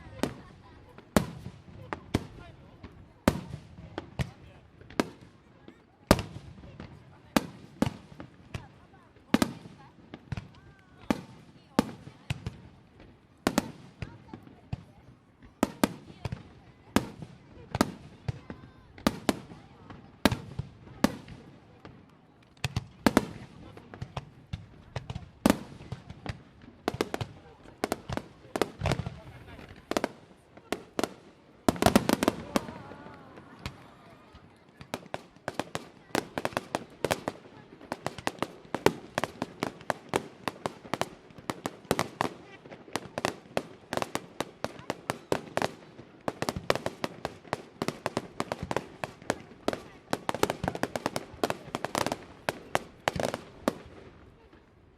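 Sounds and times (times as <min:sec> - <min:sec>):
fireworks bursting with echoing bangs: 0:00.0 - 0:05.4, 0:06.1 - 0:54.7.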